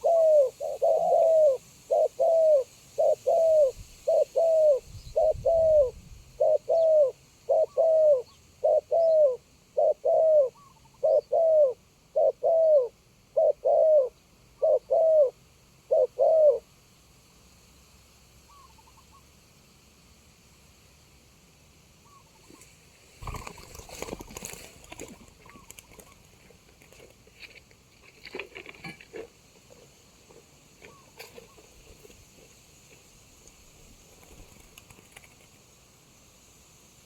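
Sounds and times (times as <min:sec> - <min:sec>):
dove cooing: 0:00.0 - 0:16.7, 0:23.2 - 0:26.6.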